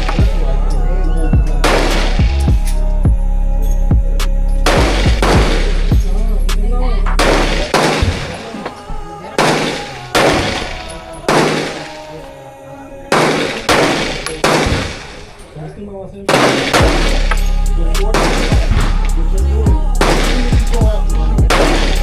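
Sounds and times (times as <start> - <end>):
hip-hop music with heavy bass: 0.0 - 15.6, 16.2 - 22.0
gunshots with ringing tail: 1.6 - 2.3, 4.6 - 6.1, 7.2 - 8.6, 9.3 - 12.3, 13.1 - 15.4, 16.3 - 19.2, 19.9 - 22.0.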